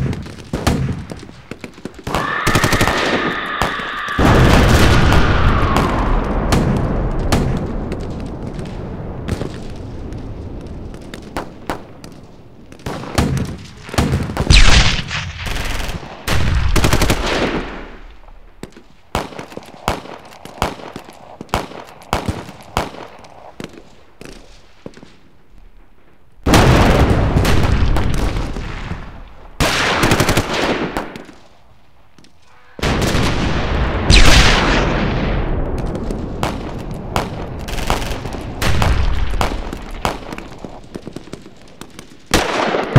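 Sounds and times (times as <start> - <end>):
heavy gunfire: 2.0 - 9.5, 12.9 - 18.0, 26.5 - 31.2, 32.8 - 41.4
single gunshots: 12.8 - 18.1, 32.8 - 40.7.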